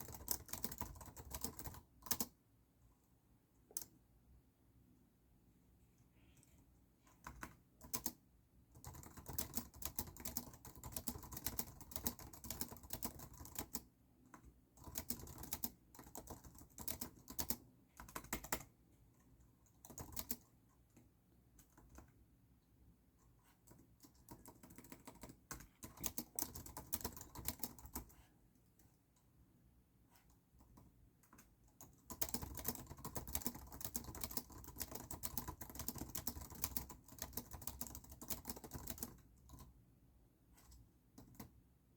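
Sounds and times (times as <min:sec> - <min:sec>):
typing on computer keyboard: 0:00.0 - 0:02.4, 0:07.0 - 0:18.8, 0:19.6 - 0:22.2, 0:23.6 - 0:28.2, 0:30.6 - 0:39.8, 0:40.6 - 0:41.6.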